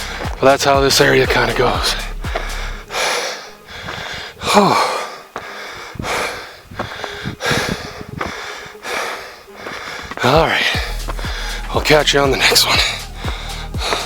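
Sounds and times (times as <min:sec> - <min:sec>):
person breathing hard: 0:00.0 - 0:00.4, 0:01.9 - 0:11.7, 0:12.5 - 0:14.0
voiced sigh: 0:02.0 - 0:11.7.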